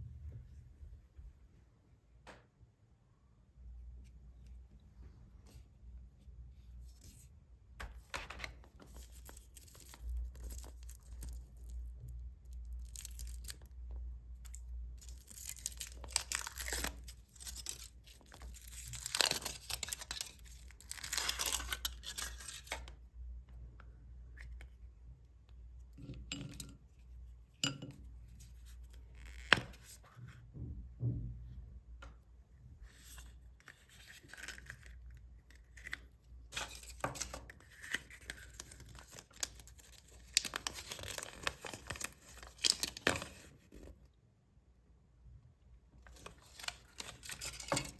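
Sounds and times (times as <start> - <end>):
foil wrapper tearing and crinkling: 12.6 - 13.7, 15.0 - 22.7, 36.6 - 43.4.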